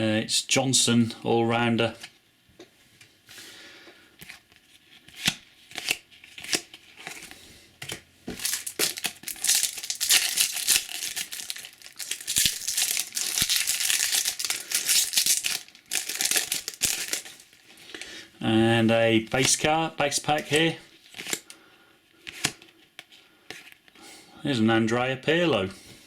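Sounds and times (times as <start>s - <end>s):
card packet wrapper crinkling: 8.3s - 18.2s, 19.1s - 21.6s.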